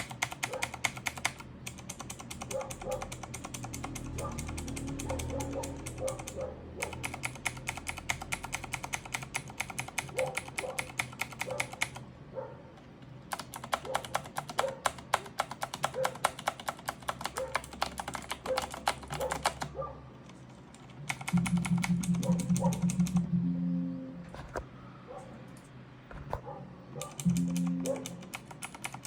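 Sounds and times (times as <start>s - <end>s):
mechanical keyboard key clicking: 0.0s - 12.0s, 13.3s - 19.7s, 20.8s - 23.2s, 27.0s - 29.0s.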